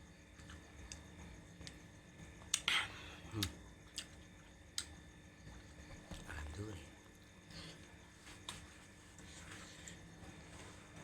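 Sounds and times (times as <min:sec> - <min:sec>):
chewing with wet mouth clicks: 0:03.4 - 0:04.2, 0:04.8 - 0:05.0.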